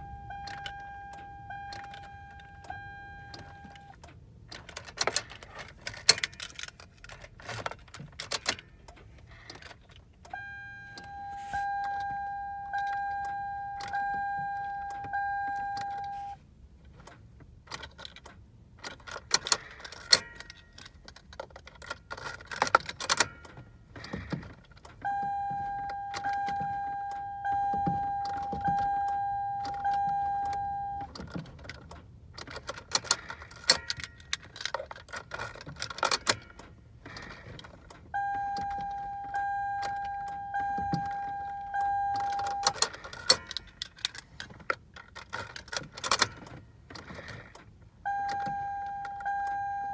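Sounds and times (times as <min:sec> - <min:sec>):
dashboard chime dinging: 0:00.0 - 0:04.0, 0:10.3 - 0:16.4, 0:25.0 - 0:31.1, 0:38.2 - 0:43.8, 0:48.1 - 0:49.9
car keys jangling in ignition: 0:00.0 - 0:49.9.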